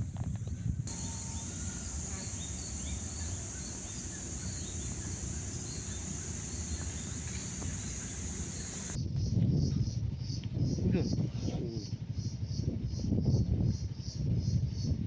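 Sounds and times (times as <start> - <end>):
faint chirps: 0.9 - 9.0
high-pitched insect chorus: 0.9 - 9.0
low rumbling noise: 0.9 - 9.0.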